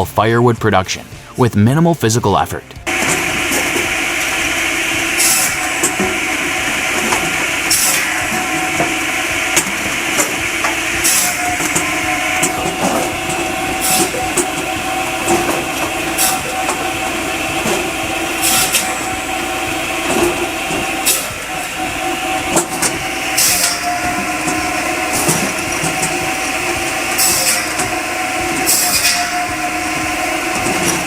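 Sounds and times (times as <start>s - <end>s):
firewood processor droning: 0.0s - 31.0s
hiss and knocks of wood splitting: 6.9s - 19.2s.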